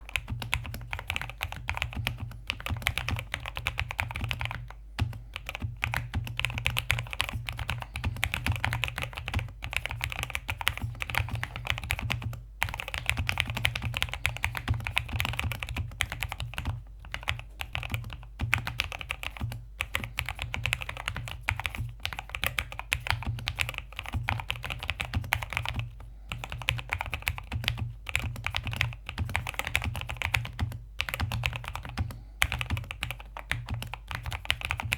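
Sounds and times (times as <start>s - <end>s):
fast typing on mechanical keyboard: 0.1s - 34.9s.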